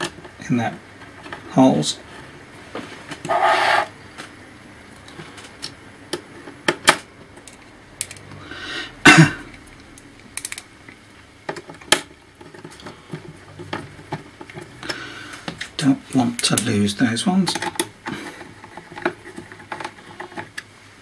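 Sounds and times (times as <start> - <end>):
short scrape: 3.3 - 3.9.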